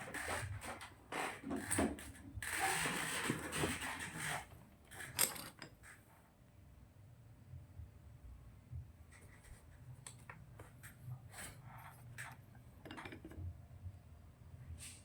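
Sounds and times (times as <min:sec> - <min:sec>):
scraping and rubbing: 0:00.0 - 0:06.0.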